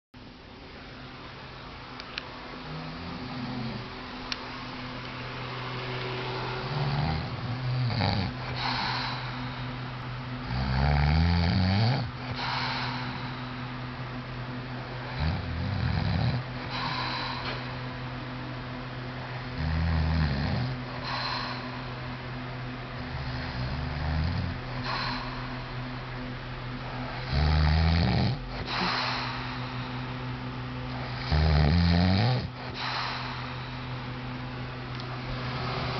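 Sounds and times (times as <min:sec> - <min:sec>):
steady low hum: 0:00.2 - 0:35.9
man snoring: 0:02.6 - 0:03.9, 0:06.4 - 0:09.6, 0:10.4 - 0:13.4, 0:15.0 - 0:17.5, 0:19.3 - 0:22.0, 0:23.0 - 0:26.0, 0:26.7 - 0:29.6, 0:30.9 - 0:33.6.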